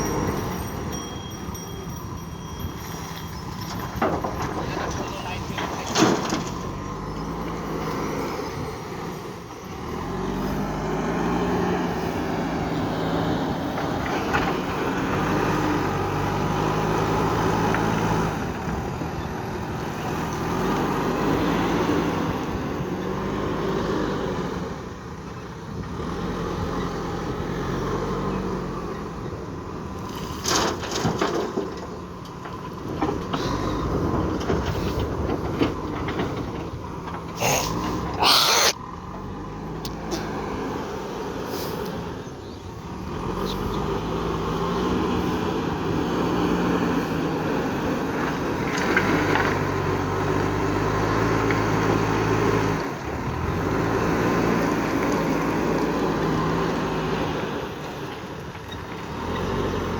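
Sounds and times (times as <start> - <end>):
diesel engine revving: 0.0 - 3.8, 5.5 - 59.9
sharp knocks and rattles: 0.0 - 6.8, 30.3 - 37.4.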